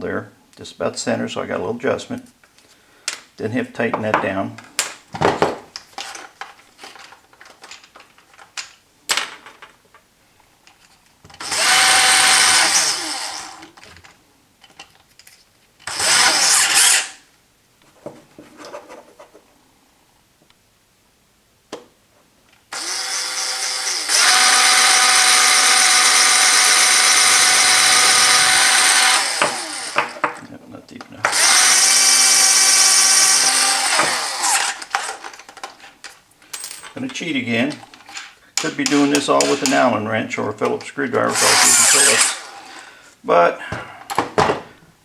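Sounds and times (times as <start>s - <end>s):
tools handled on a workbench: 3.9s - 11.4s, 13.8s - 15.5s, 17.8s - 19.5s, 34.9s - 39.9s
electric drill whining: 11.4s - 13.8s, 15.9s - 17.2s, 22.7s - 30.2s, 31.3s - 35.4s, 41.3s - 42.8s.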